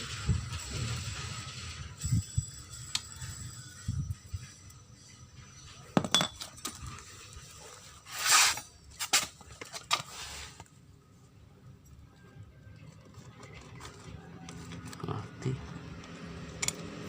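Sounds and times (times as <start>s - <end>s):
metal tools clinking and knocking: 5.9s - 7.0s.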